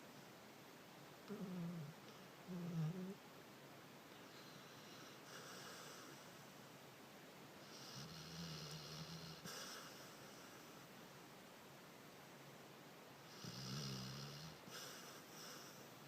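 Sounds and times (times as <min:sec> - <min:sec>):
dog snoring softly: 0:01.3 - 0:03.2, 0:04.2 - 0:06.4, 0:07.6 - 0:10.9, 0:13.2 - 0:16.0.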